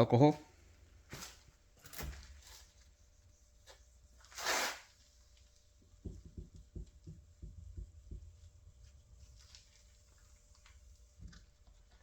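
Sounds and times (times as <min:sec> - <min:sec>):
wipe rubbing swish: 0:03.0 - 0:04.9.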